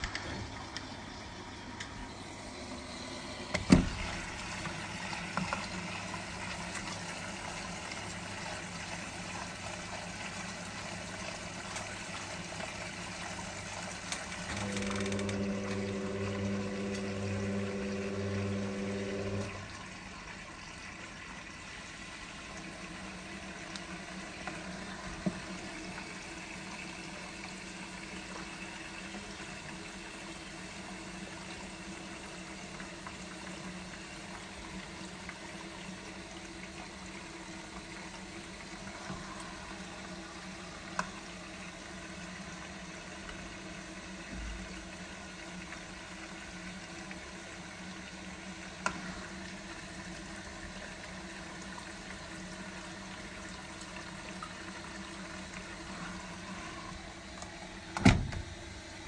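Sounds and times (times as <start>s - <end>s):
washing machine running: 0.0s - 59.0s
water rushing: 14.3s - 19.9s.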